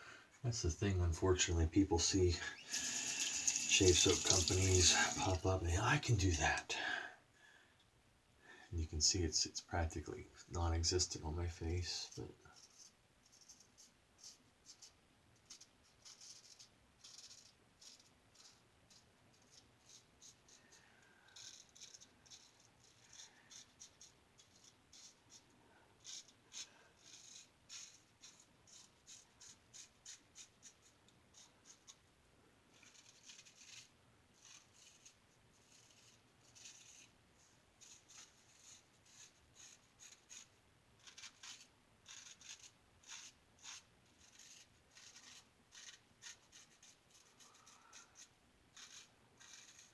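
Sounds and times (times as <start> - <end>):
razor scraping stubble: 2.0 - 6.6, 32.7 - 37.1, 37.8 - 49.9.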